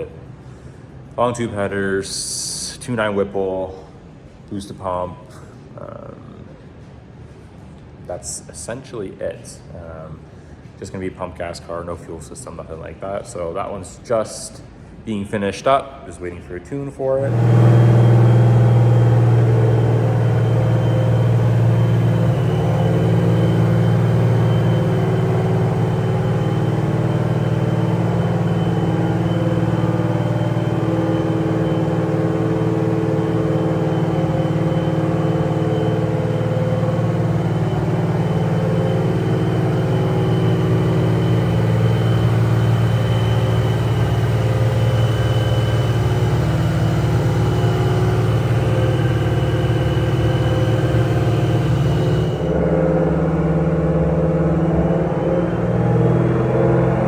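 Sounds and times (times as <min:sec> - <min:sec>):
supercharger whine: 0:17.1 - 0:57.0
car engine idling: 0:17.2 - 0:57.0.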